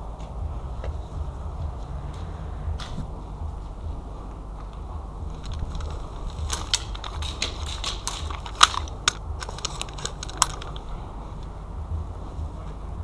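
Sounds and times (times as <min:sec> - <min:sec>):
low steady rumble: 0:00.0 - 0:13.0
airsoft gunfire clicks: 0:05.3 - 0:11.5.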